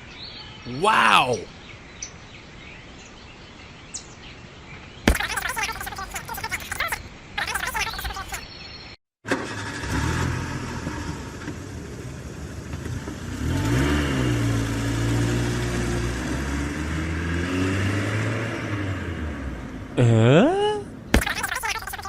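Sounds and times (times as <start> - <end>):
engine running and revving: 9.3 - 20.0.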